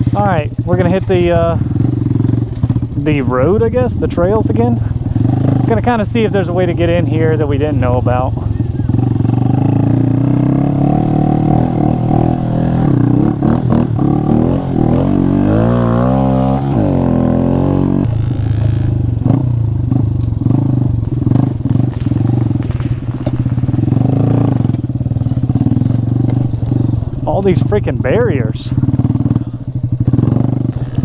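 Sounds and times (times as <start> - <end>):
motorcycle engine running: 0.0 - 31.0
knocks from bike on rough trail: 20.2 - 26.9.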